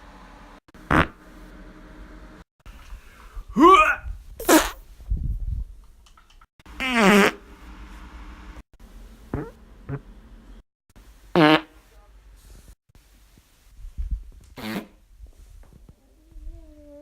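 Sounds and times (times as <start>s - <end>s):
human farts: 0.8s - 1.2s, 4.4s - 4.8s, 6.8s - 7.4s, 9.3s - 10.0s, 11.4s - 11.8s, 14.5s - 15.0s.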